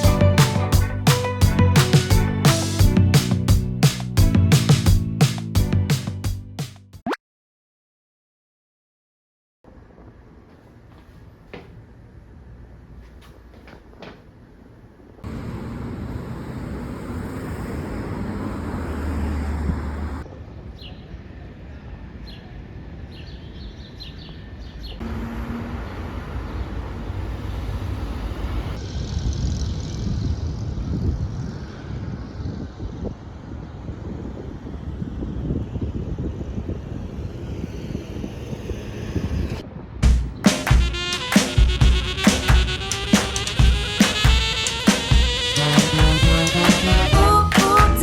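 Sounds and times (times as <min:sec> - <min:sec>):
traffic hum: 0:00.0 - 0:06.6, 0:09.7 - 0:48.0
birds chirping: 0:22.2 - 0:27.6.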